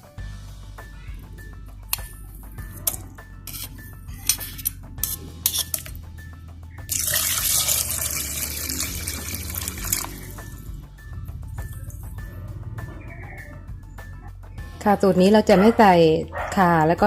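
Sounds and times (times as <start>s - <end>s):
background music: 0.0s - 17.0s
water pouring: 6.9s - 10.8s.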